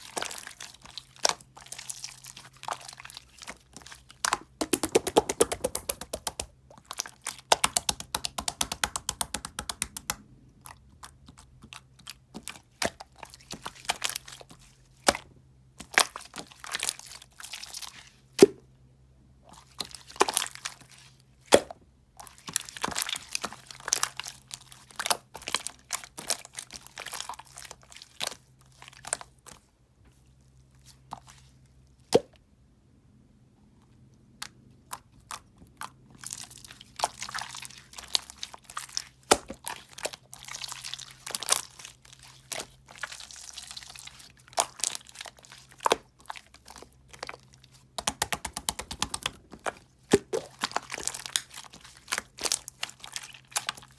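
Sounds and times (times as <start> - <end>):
gel crunching and crackling: 0.0 - 18.4, 19.6 - 29.7, 34.1 - 53.9
sharp snaps: 4.4 - 6.5
fast clicks: 4.6 - 6.5.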